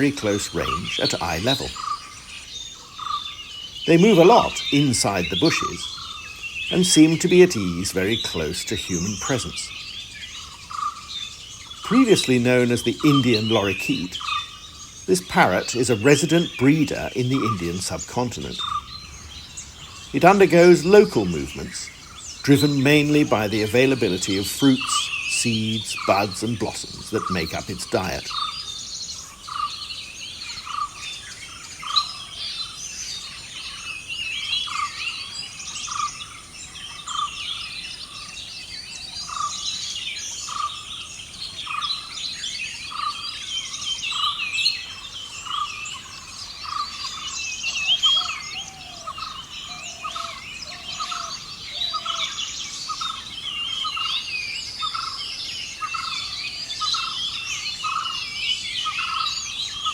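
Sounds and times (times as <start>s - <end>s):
birds chirping and twittering: 0.0s - 59.9s
insect hiss: 0.0s - 59.9s.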